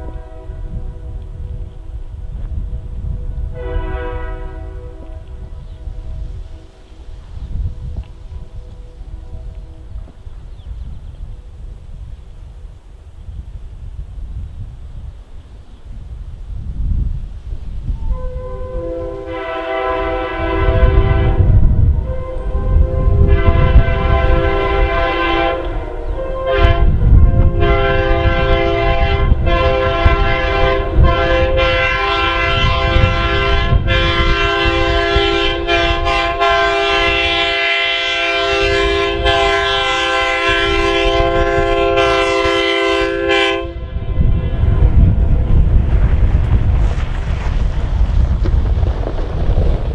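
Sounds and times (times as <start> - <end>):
locomotive air horns chord: 0.0 - 1.7, 3.4 - 7.7, 18.0 - 45.1.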